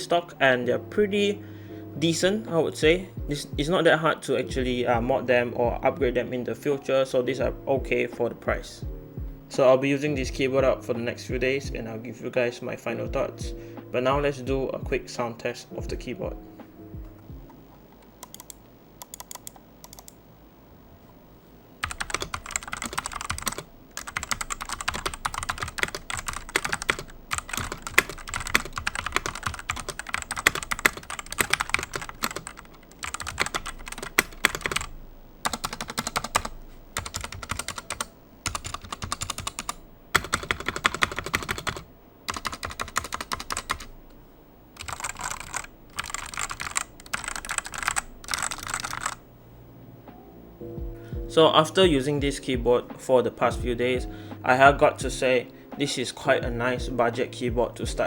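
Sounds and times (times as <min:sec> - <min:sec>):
typing on mechanical keyboard: 0:18.2 - 0:20.2, 0:21.8 - 0:43.9, 0:44.8 - 0:49.2.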